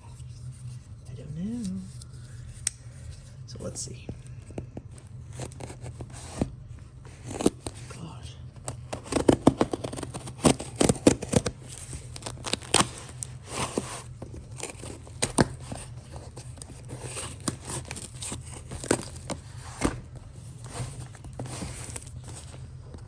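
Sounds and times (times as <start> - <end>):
steady low hum: 0.0 - 23.0
plastic packaging tearing and crinkling: 7.1 - 7.9, 8.6 - 22.7.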